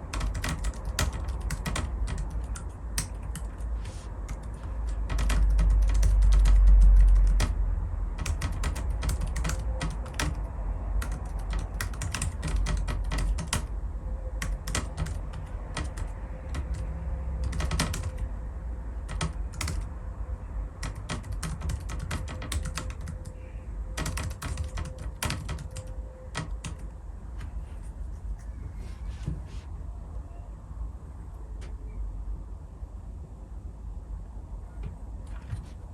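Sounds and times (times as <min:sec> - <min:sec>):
fast keyboard typing: 0:00.0 - 0:13.8, 0:14.4 - 0:20.0, 0:20.7 - 0:23.4, 0:24.0 - 0:27.6.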